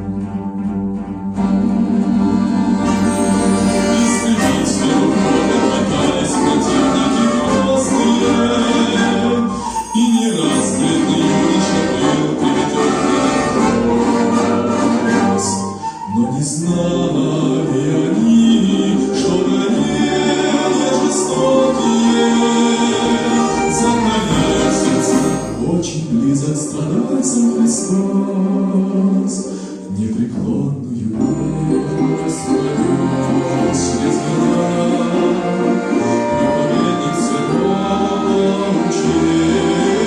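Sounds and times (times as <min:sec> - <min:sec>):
folk orchestra: 0:00.0 - 0:40.0
choir singing a hymn: 0:01.4 - 0:15.4, 0:16.7 - 0:30.1, 0:31.2 - 0:40.0
singers breathing: 0:15.7 - 0:16.1, 0:29.5 - 0:29.9.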